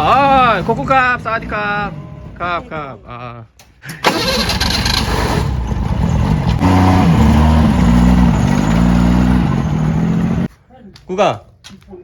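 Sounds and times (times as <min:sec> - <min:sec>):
small engine revving: 0:04.1 - 0:10.5.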